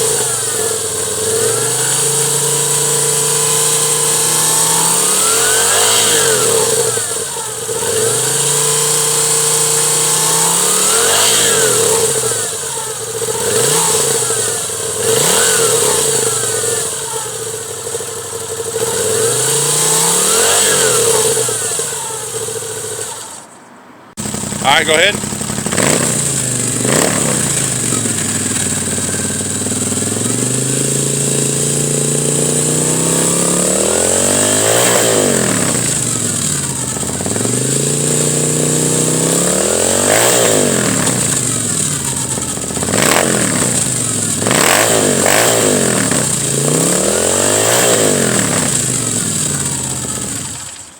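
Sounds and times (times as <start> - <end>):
motorcycle engine idling and revving: 0.0 - 50.9.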